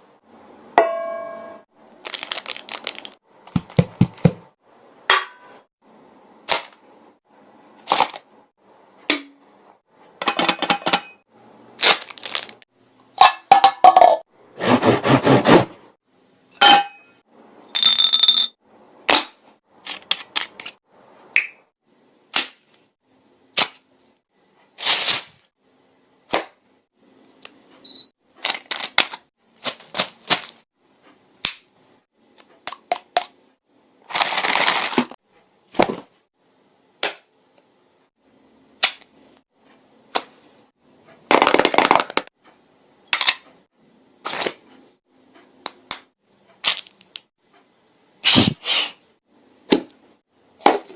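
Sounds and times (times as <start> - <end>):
person making hissing bursts: 48.2 - 49.1.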